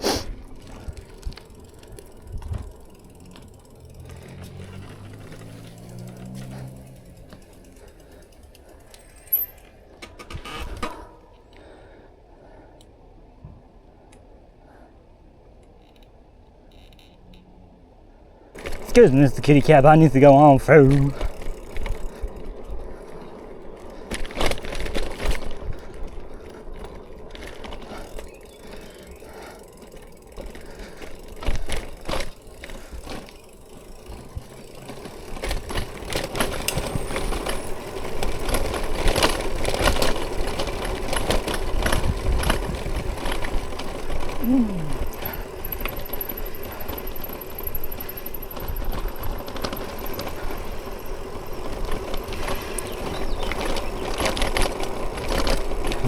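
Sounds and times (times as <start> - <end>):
bicycle rattling and clicking: 0.3 - 12.0, 15.7 - 17.4, 18.5 - 56.0.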